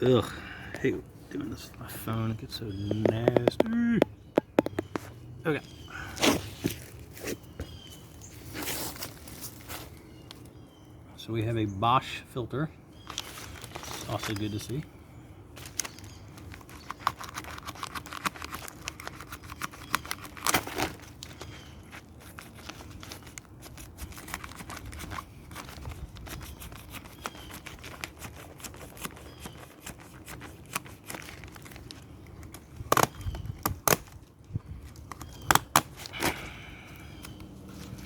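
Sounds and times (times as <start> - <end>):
paper crinkling and tearing: 13.1 - 14.8, 15.6 - 36.3.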